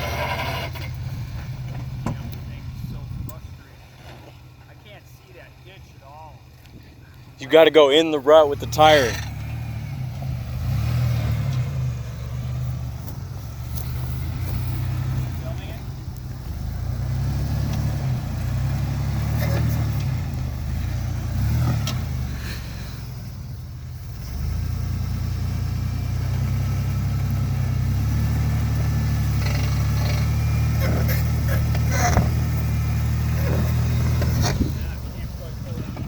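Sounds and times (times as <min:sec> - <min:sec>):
van engine under load: 0:00.0 - 0:36.0
knocks and clunks: 0:00.7 - 0:04.5, 0:29.4 - 0:36.0.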